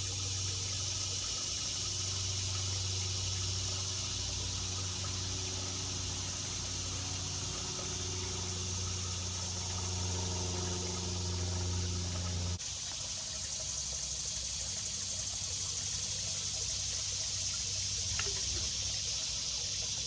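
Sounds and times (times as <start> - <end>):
low motor hum: 0.0 - 12.6.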